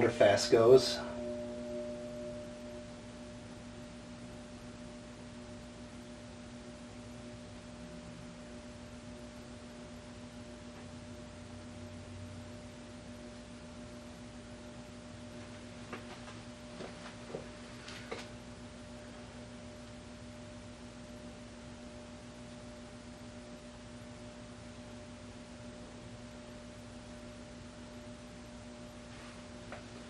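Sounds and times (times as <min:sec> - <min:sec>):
ceiling fan motor hum: 0:00.0 - 0:30.0.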